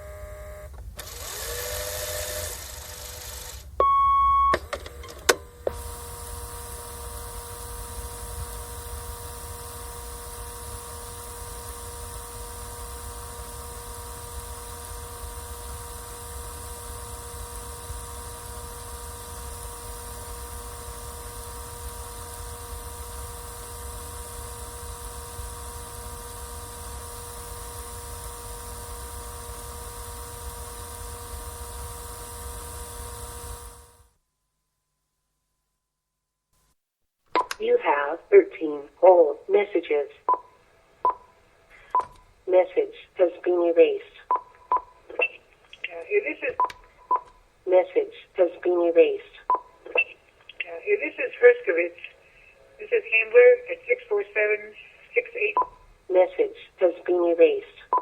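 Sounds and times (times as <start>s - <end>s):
tape motor whirring: 0.0s - 3.8s, 4.6s - 34.1s
loud steady beep: 3.8s - 4.6s.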